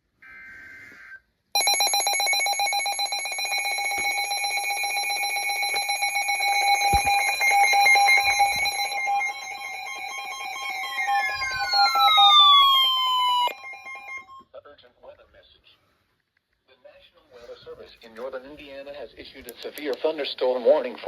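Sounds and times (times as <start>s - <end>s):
pulsing multi-tone alert signal: 1.6s - 14.4s.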